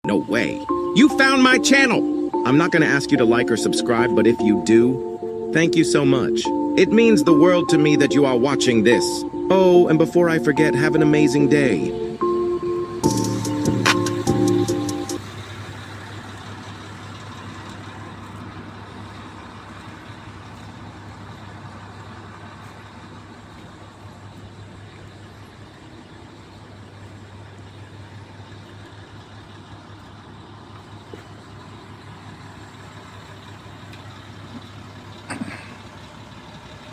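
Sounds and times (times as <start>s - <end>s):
heavy machine engine running: 8.4s - 36.9s.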